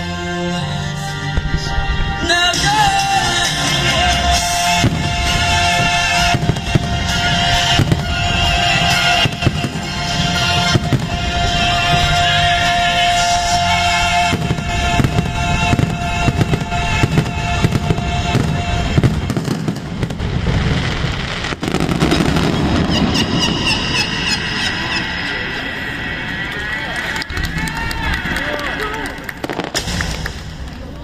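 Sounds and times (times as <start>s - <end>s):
loud show music: 0.0s - 28.6s, 29.4s - 30.7s
fireworks bursting and crackling: 1.4s - 31.0s
sharp crack: 29.0s - 31.0s.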